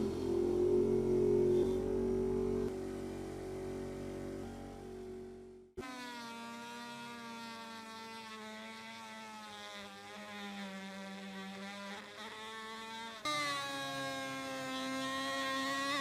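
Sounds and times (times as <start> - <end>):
power tool motor whining: 5.8 - 16.0.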